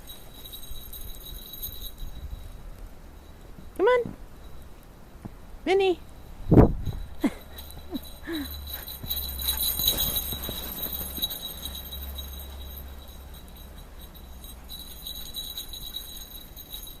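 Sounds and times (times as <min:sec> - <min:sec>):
dog collar tags jingling: 0:00.0 - 0:04.8, 0:06.0 - 0:17.0
wind rumble on microphone: 0:06.3 - 0:07.3.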